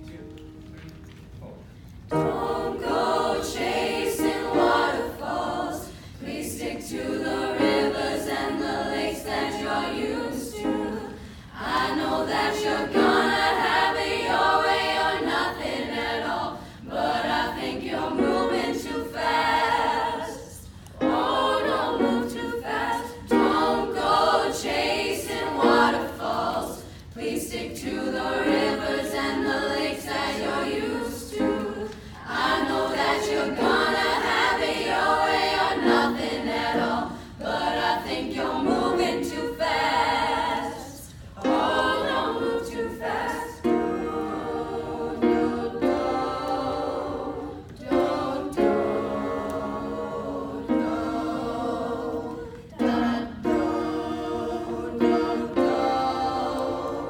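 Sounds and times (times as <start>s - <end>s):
voices singing in harmony: 2.0s - 57.0s
singers breathing: 5.9s - 6.2s, 11.2s - 11.6s, 31.9s - 32.2s.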